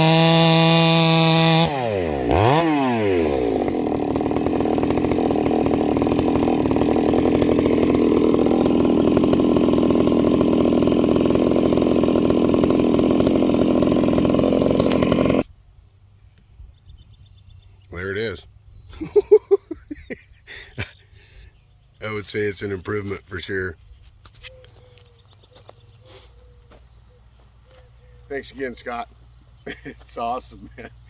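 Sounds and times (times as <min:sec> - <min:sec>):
chainsaw cutting: 0:00.0 - 0:15.5, 0:28.3 - 0:31.0.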